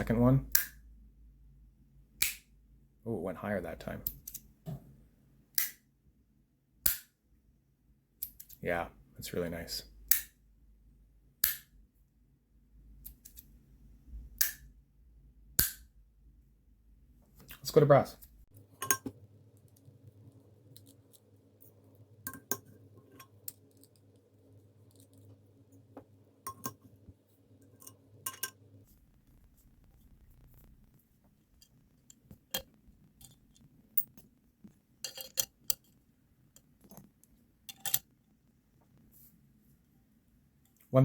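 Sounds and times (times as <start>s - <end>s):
magnets and metal parts clicking: 4.1s - 4.5s, 8.2s - 8.6s, 13.0s - 13.5s, 20.7s - 21.7s, 22.3s - 24.2s, 24.8s - 25.4s, 27.6s - 28.6s, 31.6s - 34.3s, 35.0s - 38.1s.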